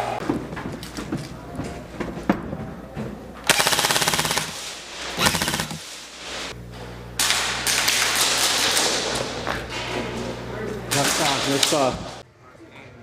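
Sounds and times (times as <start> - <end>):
airsoft guns firing full auto: 3.5 - 5.9, 7.2 - 8.9.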